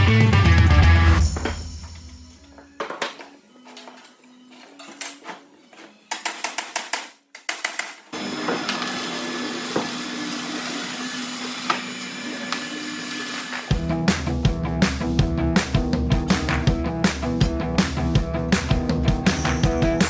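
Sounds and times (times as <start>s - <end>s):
power tool running: 8.2s - 13.9s.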